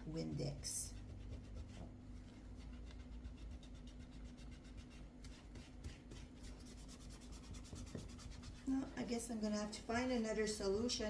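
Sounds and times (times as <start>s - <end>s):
low steady hum: 0.0s - 11.0s
scrubbing on plastic mouse: 0.8s - 8.7s.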